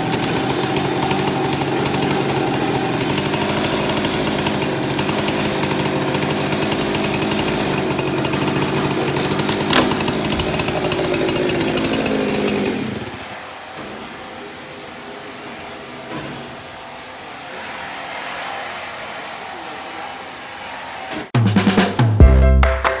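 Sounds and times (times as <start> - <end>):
sawmill saw cutting wood: 0.0 - 14.6
sharp crack: 9.6 - 11.2.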